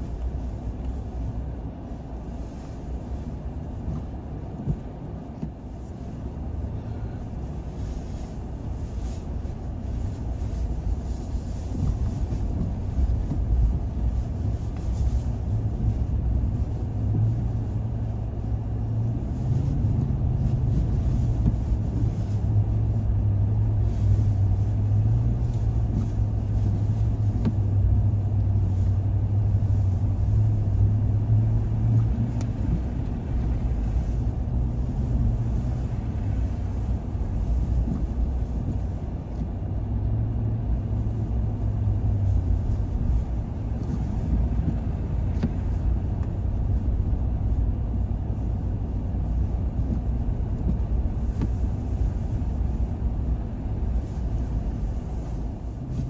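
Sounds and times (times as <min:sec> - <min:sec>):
car engine and tyre rumble: 0:00.0 - 0:56.0.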